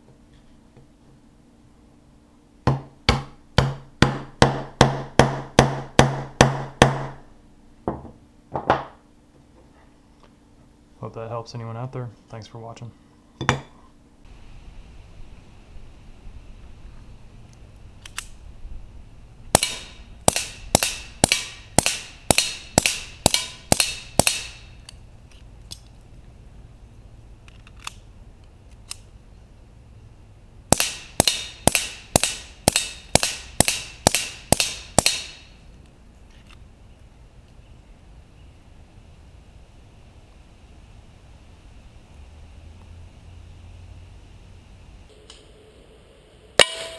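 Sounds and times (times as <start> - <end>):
suppressed pistol shots: 19.5 - 24.7, 30.7 - 35.5.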